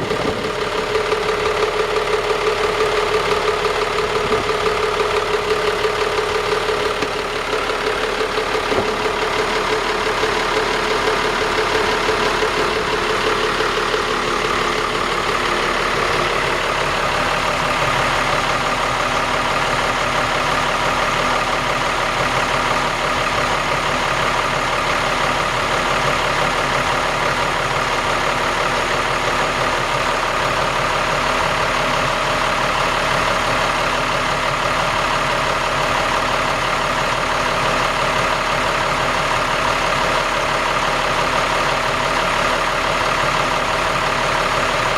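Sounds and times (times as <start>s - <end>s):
boat engine running: 0.0s - 22.6s.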